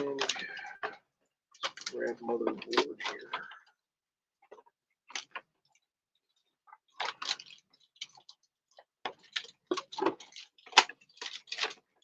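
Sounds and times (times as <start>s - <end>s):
packaging clicks and crinkles: 0.0s - 3.8s, 4.4s - 5.9s, 6.7s - 12.0s.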